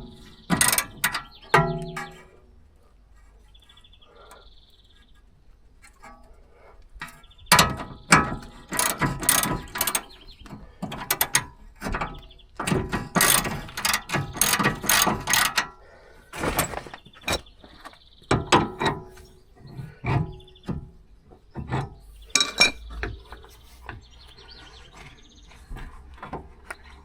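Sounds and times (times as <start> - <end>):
hand ratchet clicking: 8.7 - 10.1, 12.7 - 15.7.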